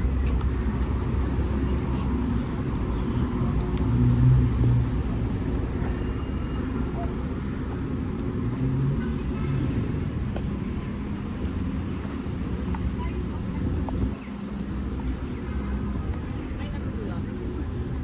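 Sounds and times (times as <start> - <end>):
vehicle passing: 0.0 - 11.8
street traffic rumble: 0.0 - 18.0.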